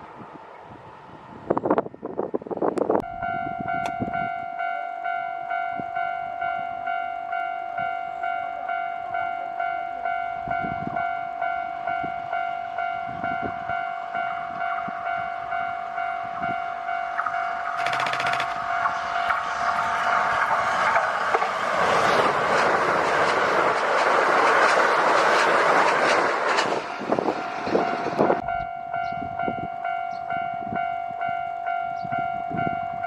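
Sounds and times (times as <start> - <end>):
oncoming train rushing: 0.0 - 33.0
level-crossing alarm ringing: 3.1 - 21.3
loud clattering noise: 17.8 - 18.6.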